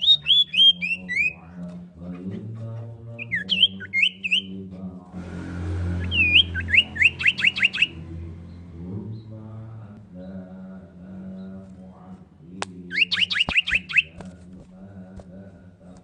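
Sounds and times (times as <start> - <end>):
bird calling in whistled notes: 0.0 - 1.4, 3.2 - 4.6, 6.0 - 8.6, 12.9 - 14.2.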